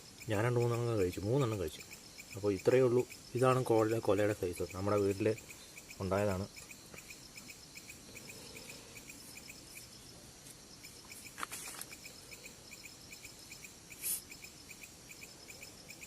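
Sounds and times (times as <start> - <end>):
crickets chirping: 0.0 - 16.0
rustling close by: 9.2 - 12.2.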